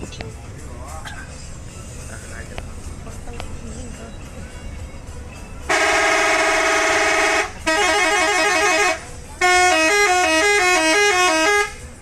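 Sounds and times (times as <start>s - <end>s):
musical air horn playing a tune: 5.7s - 11.8s.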